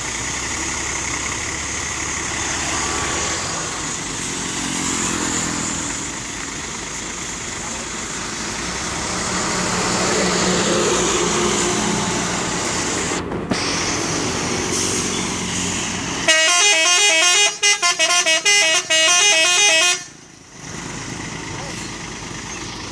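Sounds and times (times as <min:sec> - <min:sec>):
road noise: 0:00.0 - 0:22.9
truck engine: 0:00.0 - 0:22.9
musical horn melody: 0:16.2 - 0:20.1.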